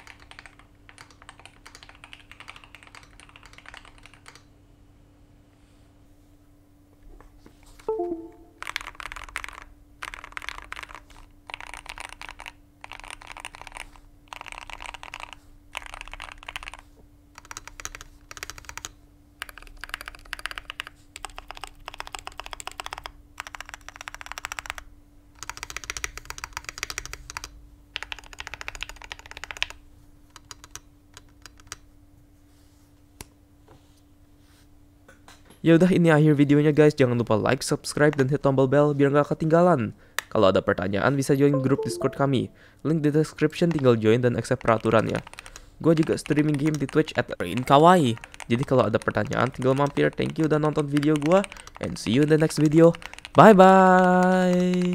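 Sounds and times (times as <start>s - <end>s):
mechanical keyboard typing: 0.0s - 4.4s, 7.9s - 16.8s, 17.4s - 31.8s, 43.6s - 54.9s
faint steady hum: 0.0s - 54.9s.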